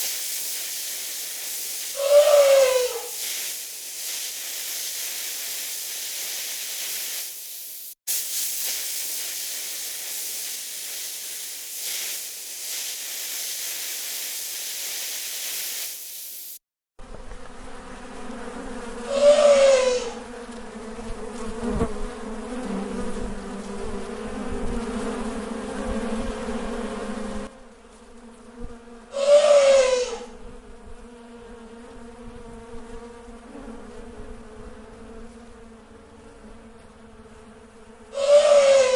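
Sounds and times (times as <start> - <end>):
hornet swarm buzzing: 0.0 - 16.6
steady high hiss: 0.0 - 16.6.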